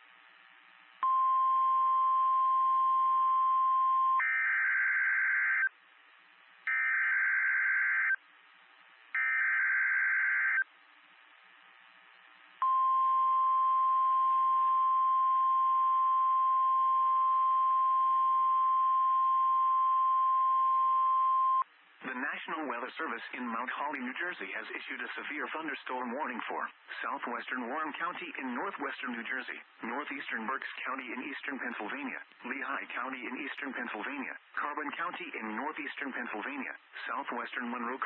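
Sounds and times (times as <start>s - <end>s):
warning alarm tone: 1.0s - 5.7s, 6.7s - 8.2s, 9.2s - 10.6s
radio hiss: 22.0s - 38.0s.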